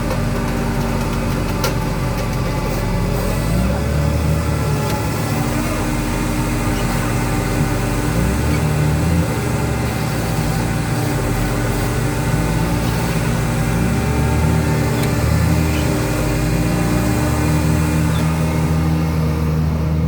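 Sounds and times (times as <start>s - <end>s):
heavy machine engine running: 0.0s - 20.0s.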